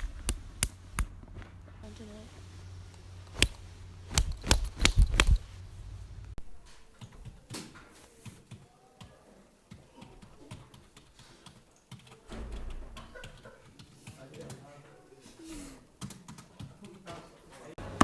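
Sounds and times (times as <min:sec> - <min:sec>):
loud sharp clicks: 0:03.3 - 0:05.4.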